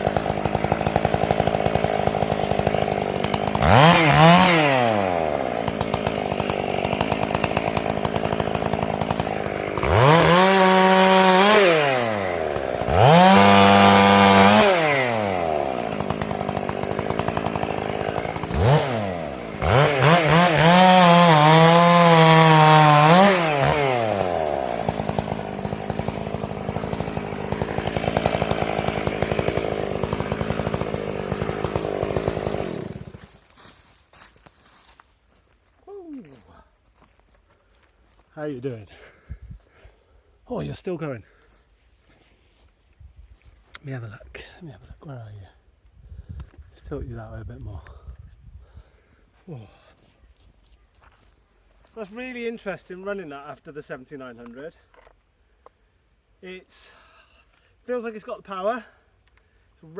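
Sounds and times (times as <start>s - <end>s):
chainsaw idling: 0.0s - 34.3s
chainsaw cutting wood: 0.0s - 35.0s.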